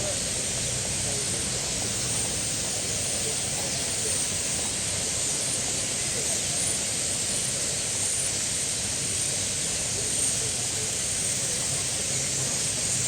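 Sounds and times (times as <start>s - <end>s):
flock of starlings chirping: 1.1s - 4.7s.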